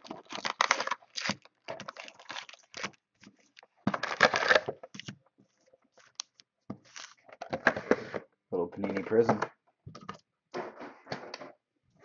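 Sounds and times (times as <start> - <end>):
plastic wrap and cardboard tearing: 0.0 - 3.0, 4.0 - 4.7.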